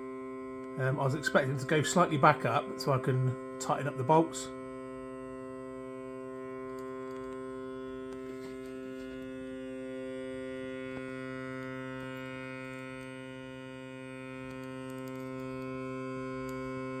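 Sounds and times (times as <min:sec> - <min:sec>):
stepper motor grinding and buzzing: 0:04.9 - 0:17.0.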